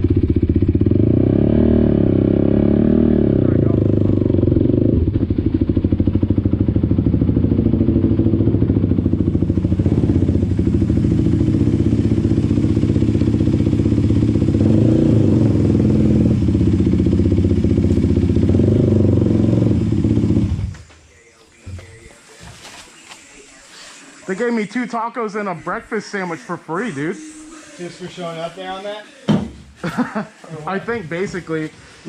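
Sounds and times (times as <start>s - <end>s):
quad engine running: 0.0s - 20.8s.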